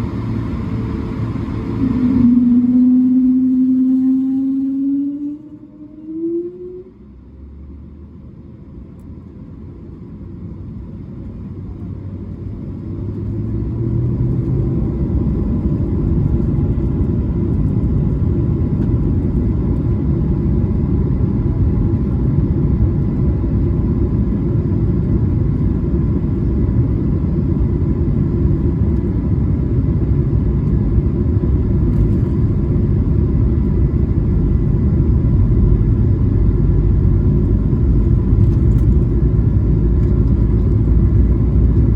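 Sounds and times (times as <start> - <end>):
jet engines spooling up: 0.0 - 7.1.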